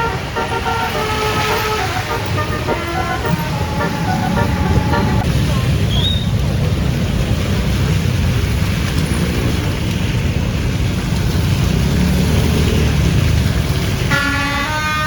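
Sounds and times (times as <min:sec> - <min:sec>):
multi-tone horn melody: 0:00.0 - 0:05.5, 0:14.1 - 0:15.0
bus rumble and road noise: 0:00.0 - 0:15.0.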